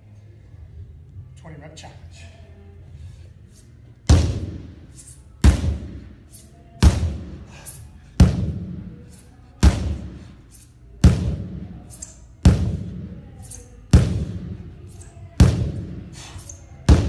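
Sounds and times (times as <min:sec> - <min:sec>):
sledgehammer thudding on tire: 0:04.1 - 0:04.8, 0:05.4 - 0:06.1, 0:06.8 - 0:07.4, 0:08.2 - 0:08.9, 0:09.6 - 0:10.2, 0:11.0 - 0:11.7, 0:12.4 - 0:13.1, 0:13.9 - 0:14.6, 0:15.4 - 0:16.2.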